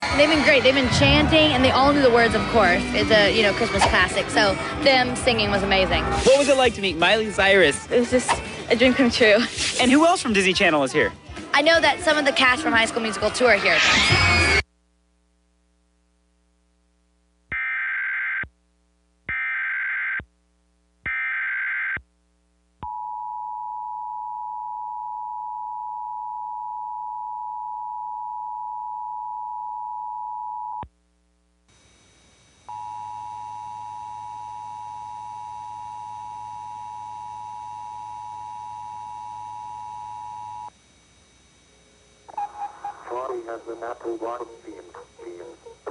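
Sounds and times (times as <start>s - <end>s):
data burst tones: 32.0s - 45.9s.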